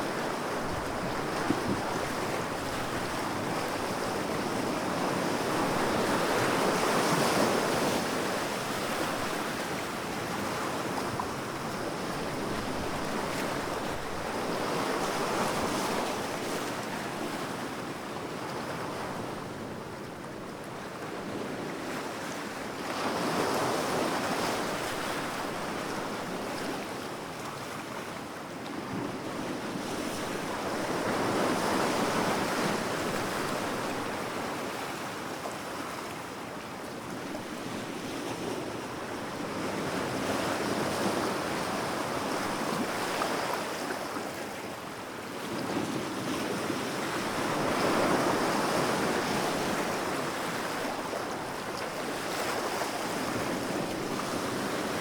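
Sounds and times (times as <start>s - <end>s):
ocean waves breaking on shore: 37.3s - 55.0s.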